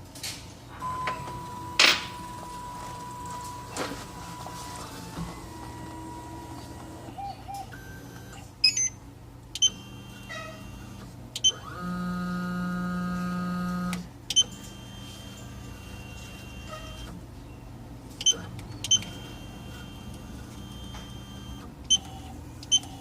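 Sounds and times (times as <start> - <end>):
constant low hum: 0.0 - 23.0
short high beeps: 8.6 - 9.0.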